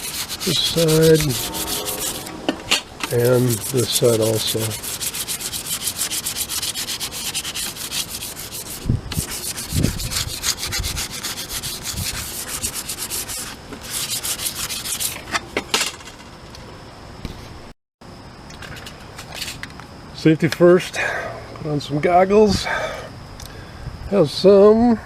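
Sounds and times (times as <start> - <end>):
sandpaper scratching on metal: 0.0 - 2.4, 3.1 - 15.2.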